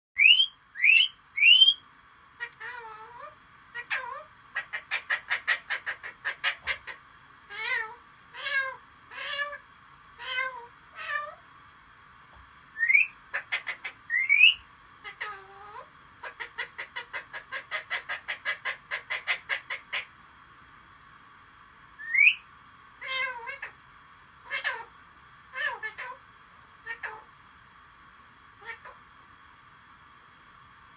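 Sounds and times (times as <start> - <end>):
parrot sharp rising whistles: 0.2 - 1.8, 12.8 - 13.2, 14.1 - 14.6, 22.0 - 22.4
parrot clucking like a hen: 3.8 - 7.8, 12.9 - 20.1
parrot cat-like meows: 7.5 - 9.6, 10.2 - 11.4, 23.0 - 23.8, 24.5 - 24.9, 25.5 - 26.2, 28.6 - 29.0.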